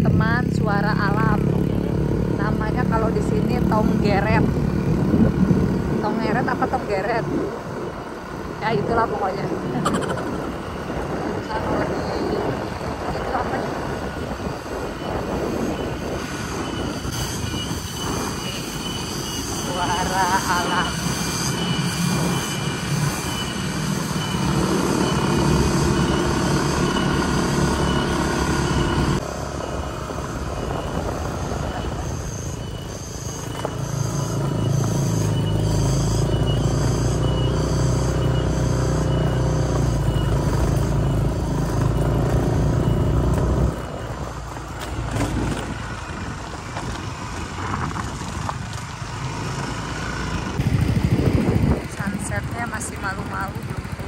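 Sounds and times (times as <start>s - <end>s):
vehicle engine drone: 0.0s - 54.0s
cicadas calling: 12.4s - 50.4s.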